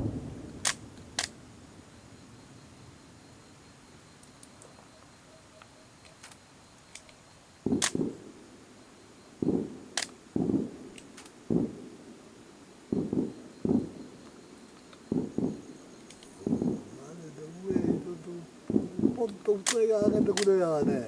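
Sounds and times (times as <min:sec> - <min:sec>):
sharp high fireworks cracks: 0:00.0 - 0:02.1, 0:06.1 - 0:08.3, 0:09.4 - 0:11.9, 0:12.9 - 0:21.0
fireworks booming: 0:00.0 - 0:03.6, 0:07.6 - 0:08.3, 0:09.4 - 0:10.9, 0:11.5 - 0:12.0, 0:12.9 - 0:14.2, 0:15.0 - 0:21.0.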